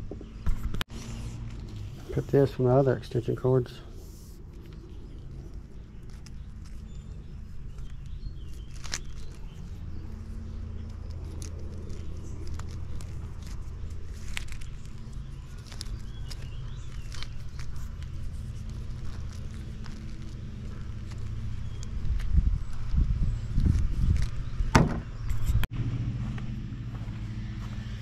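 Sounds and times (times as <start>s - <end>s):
steady low hum: 0.0s - 28.0s
cord handling noise: 4.4s - 25.6s.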